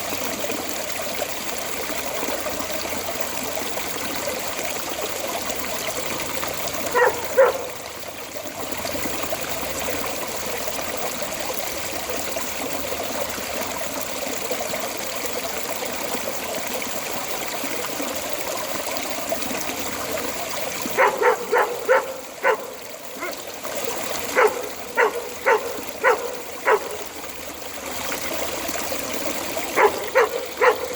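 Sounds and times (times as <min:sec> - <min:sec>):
water flowing from a drain: 0:00.0 - 0:30.9
dog barking: 0:06.9 - 0:07.8, 0:20.9 - 0:27.1, 0:29.7 - 0:30.9.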